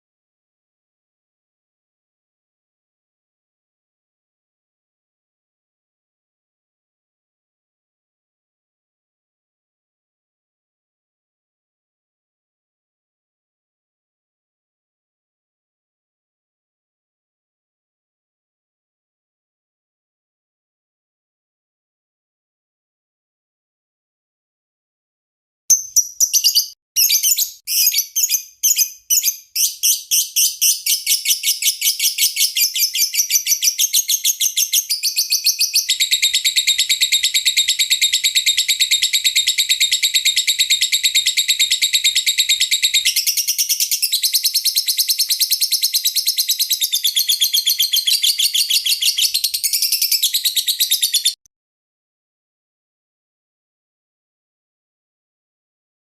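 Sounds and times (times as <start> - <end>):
lovebird chirping and trilling: 25.7 - 51.4.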